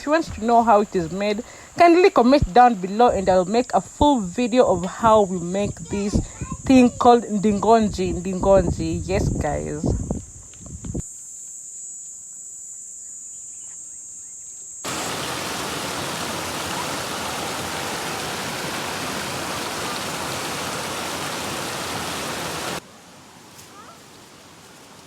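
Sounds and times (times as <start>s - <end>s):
flowing river water: 0.0s - 2.9s, 14.9s - 25.0s
high insect trill: 0.0s - 16.4s.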